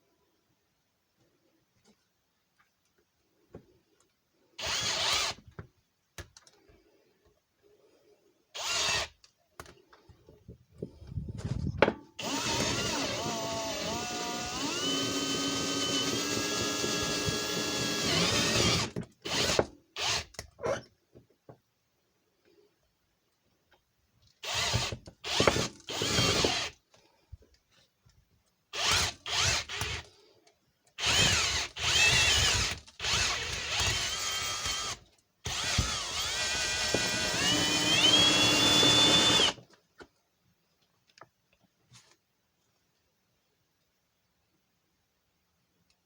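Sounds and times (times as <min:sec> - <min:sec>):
electric drill boring into lock: 0:12.2 - 0:20.3, 0:31.0 - 0:39.6.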